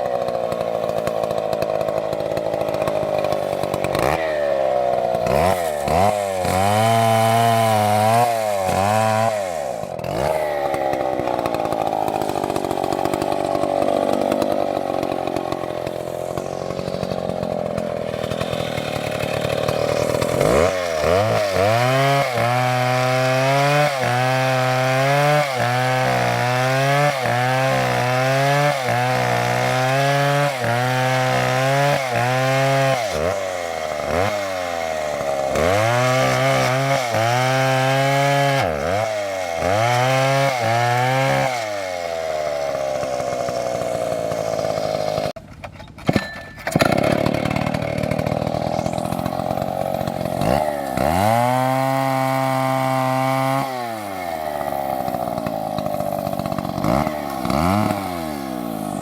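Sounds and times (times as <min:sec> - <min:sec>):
chainsaw cutting wood: 0:00.0 - 0:59.0.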